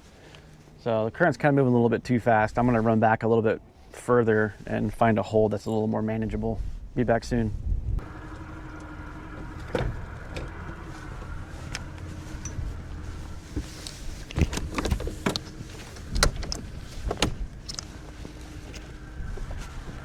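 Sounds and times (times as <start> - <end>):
boat motor running: 8.0 - 15.6.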